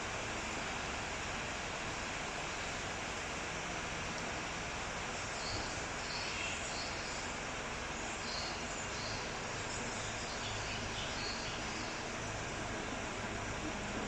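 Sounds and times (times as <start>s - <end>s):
steady hiss: 0.0s - 14.0s
birds chirping: 5.2s - 7.3s, 8.0s - 12.4s.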